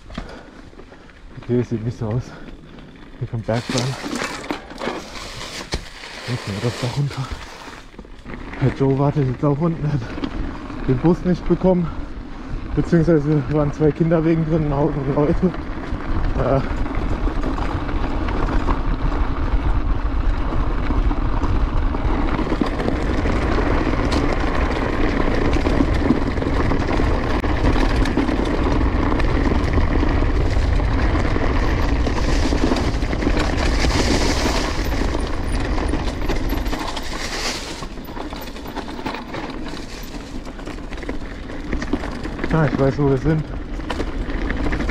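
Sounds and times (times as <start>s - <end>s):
tyre and wind noise: 0.0s - 44.9s
bike chain clattering: 1.8s - 8.0s, 22.1s - 44.9s.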